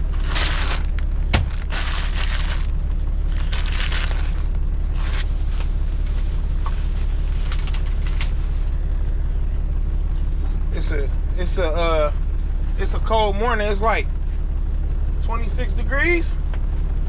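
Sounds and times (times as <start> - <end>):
rustling and crinkling: 0.0 - 8.8
engine idling: 0.0 - 17.0.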